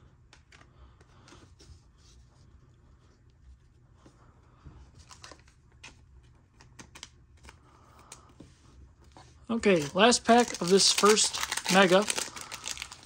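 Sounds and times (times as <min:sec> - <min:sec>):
low steady hum: 0:00.0 - 0:13.0
trading cards being shuffled: 0:09.6 - 0:13.0.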